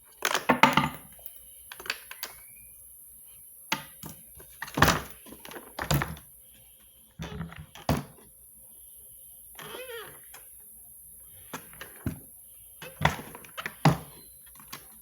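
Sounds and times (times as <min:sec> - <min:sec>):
vacuum cleaner parts knocking: 0:11.6 - 0:15.0.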